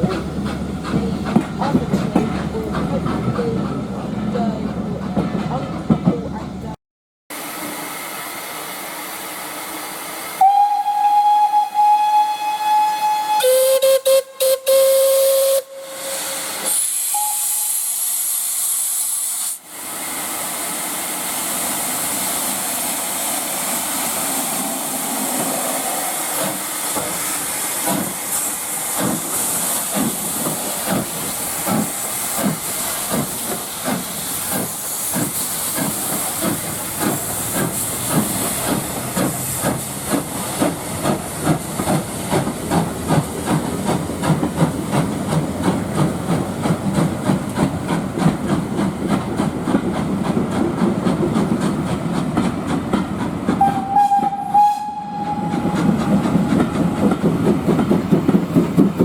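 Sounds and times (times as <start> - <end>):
steam locomotive hissing: 7.3 - 59.0
locomotive exhaust beats: 29.9 - 59.0.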